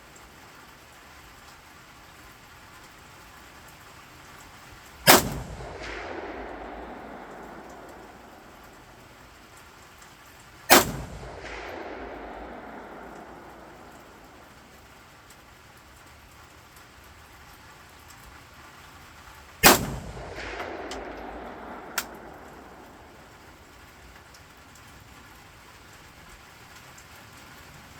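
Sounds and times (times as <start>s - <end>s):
rifle shots with echo: 4.9s - 9.5s, 10.7s - 15.0s, 19.6s - 24.2s.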